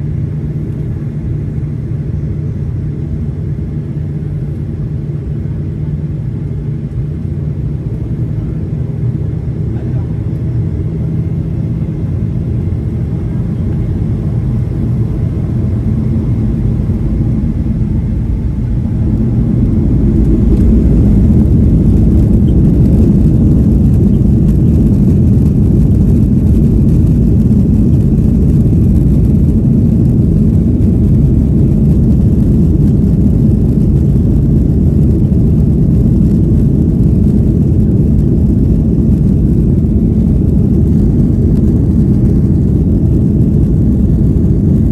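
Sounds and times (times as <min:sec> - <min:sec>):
jet engine roar in cabin: 0:00.0 - 0:44.9.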